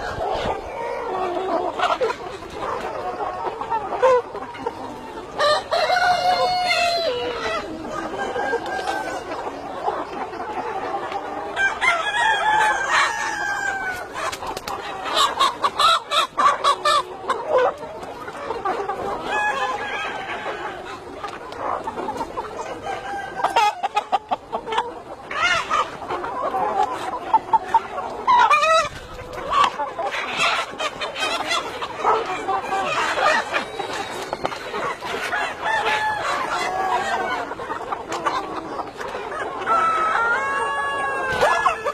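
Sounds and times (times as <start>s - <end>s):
chickens clucking: 0.0s - 41.9s.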